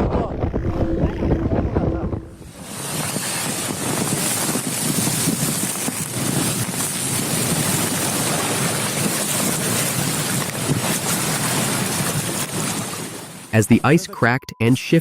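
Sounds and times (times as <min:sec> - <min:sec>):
wind rushing: 0:00.0 - 0:05.5
wind buffeting microphone: 0:00.0 - 0:12.8
waves: 0:02.5 - 0:14.0.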